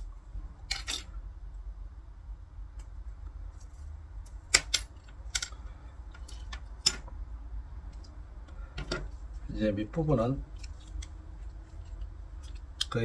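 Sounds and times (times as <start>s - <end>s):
low steady hum: 0.0s - 13.0s
sharp clicks of hard rod parts: 4.5s - 5.6s.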